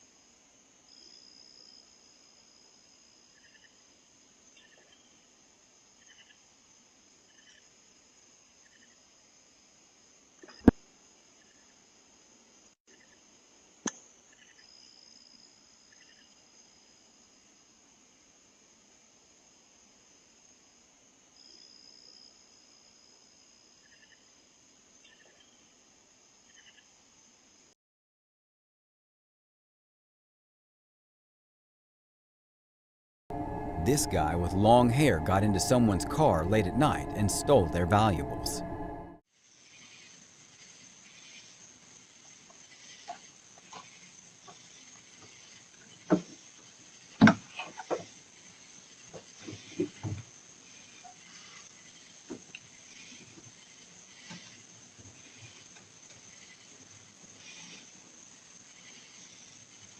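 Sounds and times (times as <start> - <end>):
night insects chirring: 0.0 - 27.7, 35.2 - 59.9
faint high whine: 33.3 - 39.2
microphone hiss: 33.3 - 39.2.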